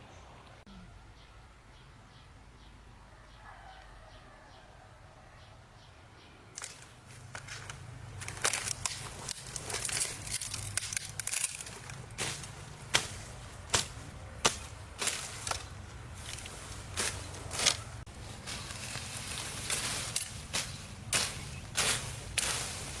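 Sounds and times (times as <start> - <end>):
rustling: 6.6 - 23.0.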